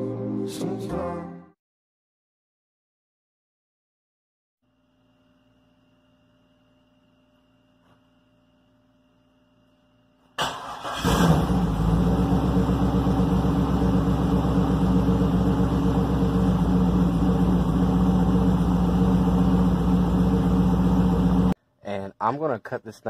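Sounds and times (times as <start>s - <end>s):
engine cranking: 10.4s - 11.6s
engine idling: 10.4s - 21.6s.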